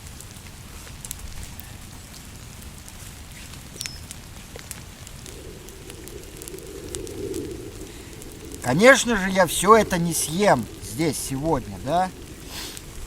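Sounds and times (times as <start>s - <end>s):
campfire crackling: 0.0s - 13.0s
low rushing noise: 5.0s - 13.0s.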